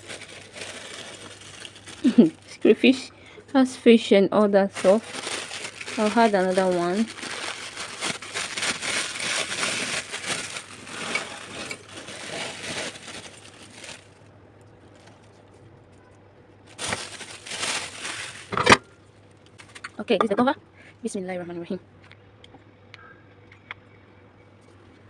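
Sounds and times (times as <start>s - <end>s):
dried crayfish crackling in grinder: 0.0s - 2.7s, 4.7s - 14.2s, 16.7s - 20.2s.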